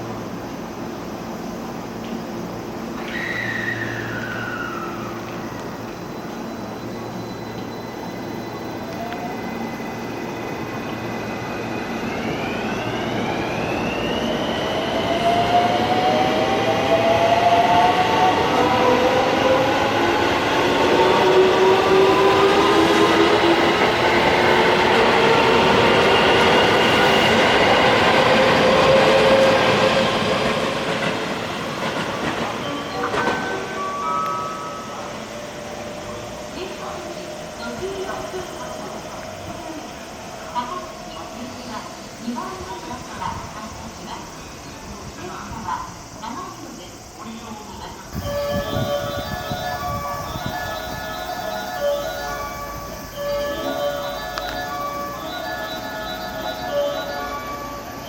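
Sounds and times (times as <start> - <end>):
train wheels clattering on rails: 19.8 - 39.7
train traction motors whining: 48.1 - 58.0.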